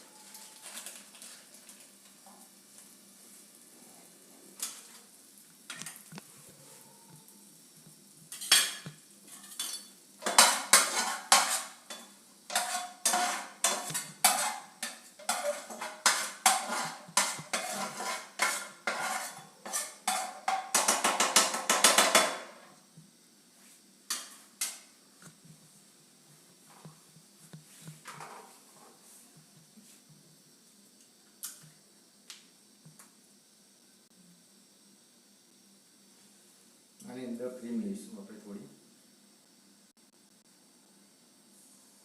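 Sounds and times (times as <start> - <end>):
metal spatula clanking on pan: 8.3 - 22.4.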